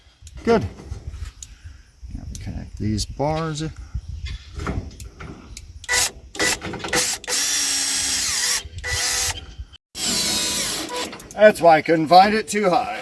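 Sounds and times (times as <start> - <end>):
power drill driving screws: 5.9 - 9.4, 10.0 - 11.4.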